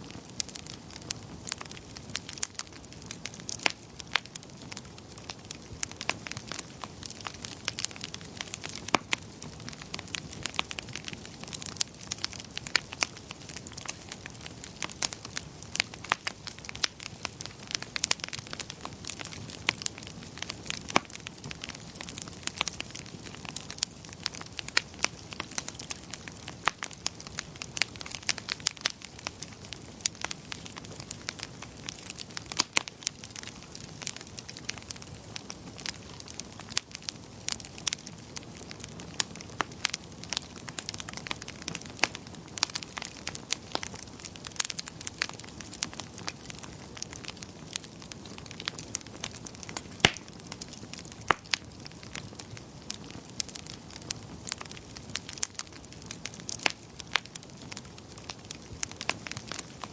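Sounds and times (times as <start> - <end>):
soft steady hiss: 0.0 - 59.9
wood fire crackling: 0.0 - 59.9.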